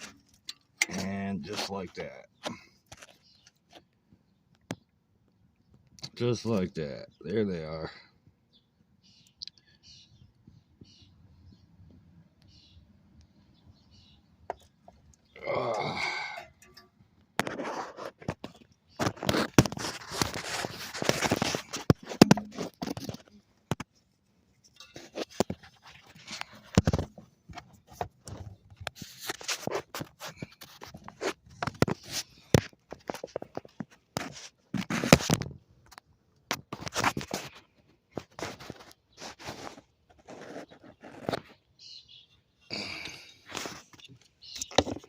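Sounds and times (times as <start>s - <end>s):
hand tools scraping and knocking: 0.0s - 3.2s, 15.6s - 24.0s, 24.6s - 35.4s, 42.8s - 45.0s.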